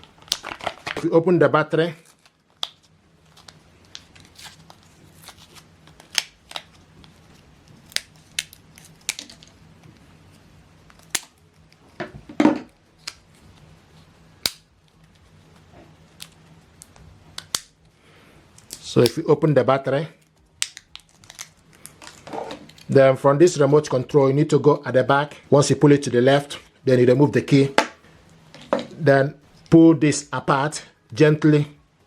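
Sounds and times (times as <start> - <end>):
plastic packaging clicks and snaps: 0.0 - 1.1, 2.1 - 7.2, 7.8 - 9.6, 10.9 - 11.7, 16.2 - 17.8, 20.2 - 22.9.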